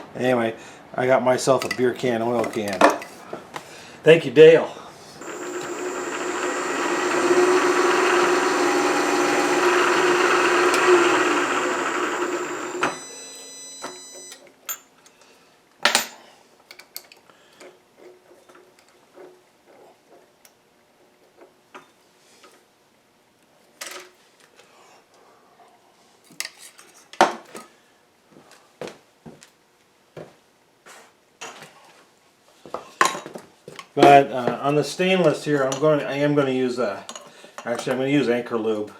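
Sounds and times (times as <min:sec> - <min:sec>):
milling machine motor running: 0:05.2 - 0:13.6.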